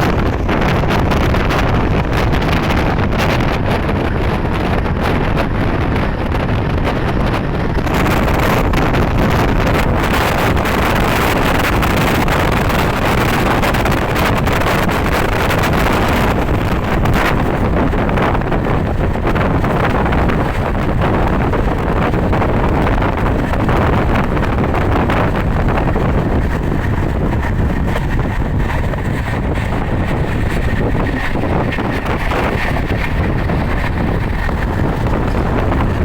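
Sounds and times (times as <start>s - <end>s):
vehicle running and road noise: 0.0s - 36.0s
wind buffeting microphone: 0.0s - 36.0s.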